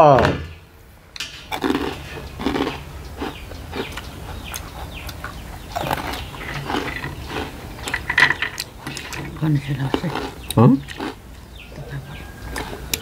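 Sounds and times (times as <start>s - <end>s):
person chewing and smacking: 1.5s - 13.0s.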